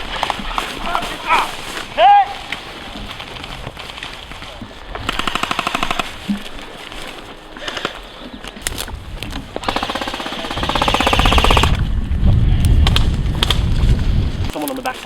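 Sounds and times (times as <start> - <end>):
airsoft guns firing: 5.0 - 6.2, 9.6 - 11.8.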